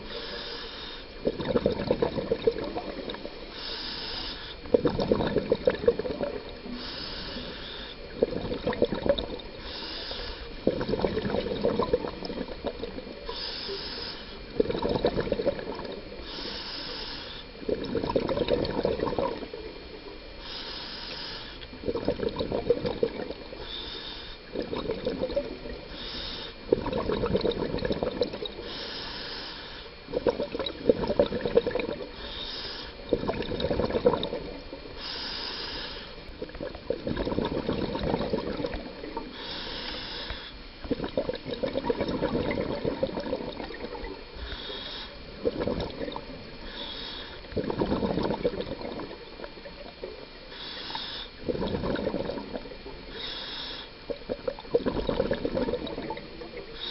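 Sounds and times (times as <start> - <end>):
regulator hissing inhale: 0.0 - 1.4, 3.4 - 4.7, 6.6 - 8.3, 9.5 - 10.6, 13.2 - 14.6, 15.9 - 17.6, 20.3 - 21.8, 23.4 - 25.1, 25.7 - 26.7, 28.5 - 30.1, 32.0 - 33.2, 34.9 - 36.4, 39.0 - 40.8, 44.3 - 47.6, 50.4 - 51.5, 52.5 - 54.2, 56.5 - 56.9
bubbling exhale: 0.0 - 19.7, 20.4 - 56.9.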